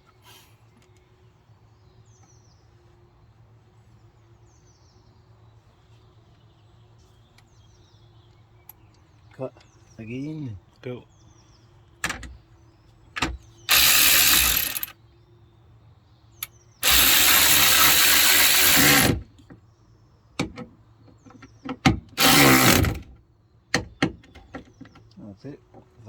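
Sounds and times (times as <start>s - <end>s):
small clicks and knocks: 12.0s - 12.4s, 13.2s - 14.9s
power driver running: 13.2s - 14.9s, 16.8s - 19.3s, 22.1s - 23.1s.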